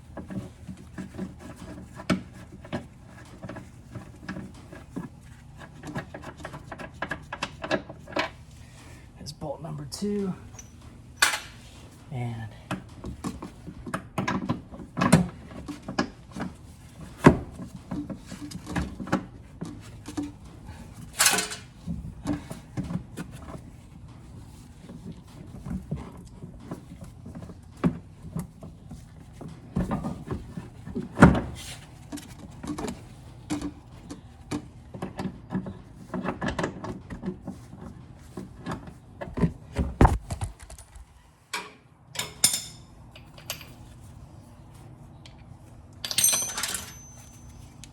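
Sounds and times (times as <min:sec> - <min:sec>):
metallic clinks of hand tools: 0:46.0 - 0:47.8.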